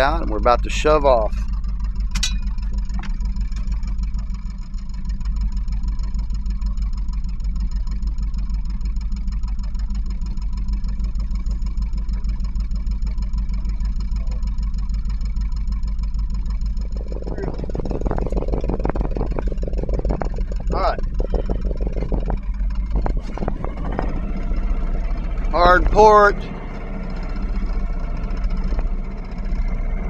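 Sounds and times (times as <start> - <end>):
boat engine idling: 0.0 - 30.0
constant hum: 0.0 - 30.0.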